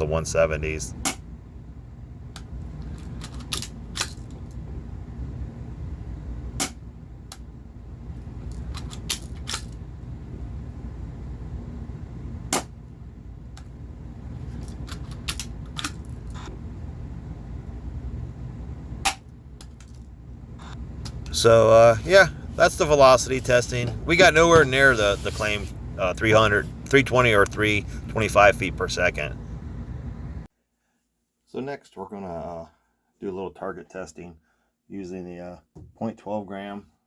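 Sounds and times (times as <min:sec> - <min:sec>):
steady low hum: 0:00.0 - 0:30.5.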